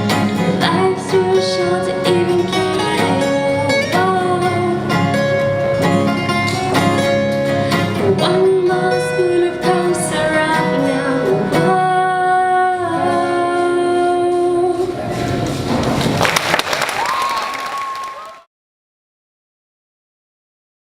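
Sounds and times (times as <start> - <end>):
acoustic guitar: 0.0 - 16.2
woman singing: 0.1 - 5.3, 7.7 - 15.0
audience applause: 15.9 - 18.5.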